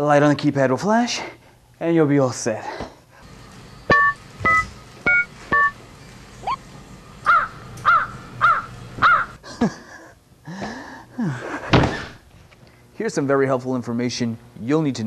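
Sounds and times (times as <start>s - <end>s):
gliding bird calls: 3.3s - 9.4s
keypad two-tone beeps: 3.9s - 5.8s
bird cawing: 7.2s - 9.4s.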